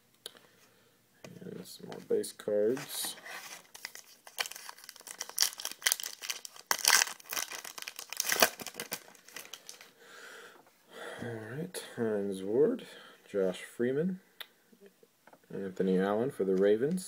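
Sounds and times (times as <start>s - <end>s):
wrapper crinkling and tearing: 3.4s - 9.9s.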